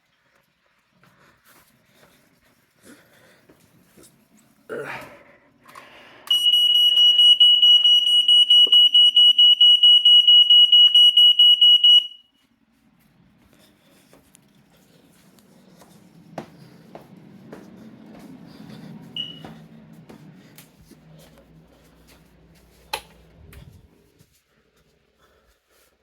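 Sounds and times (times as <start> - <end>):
smoke alarm beeping: 6.3 - 12.4, 19.2 - 19.6.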